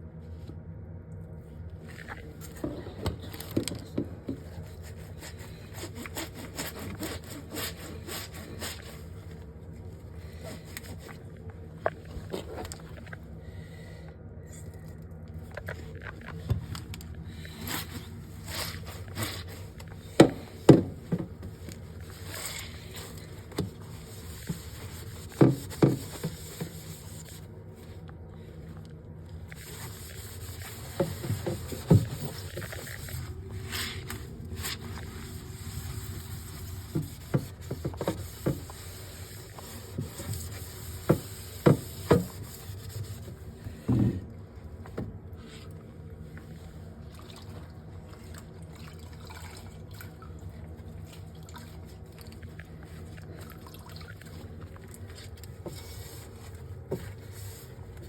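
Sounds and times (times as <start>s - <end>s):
scraping and rubbing: 1.9s - 9.4s, 17.3s - 28.0s, 29.5s - 43.8s.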